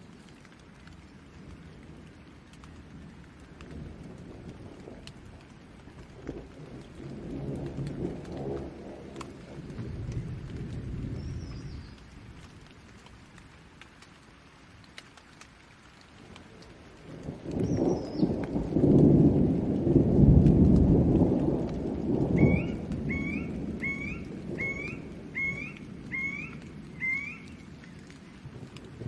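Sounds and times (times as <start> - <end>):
steady rain: 0.0 - 29.0
rolling thunder: 6.0 - 12.4, 17.1 - 27.5.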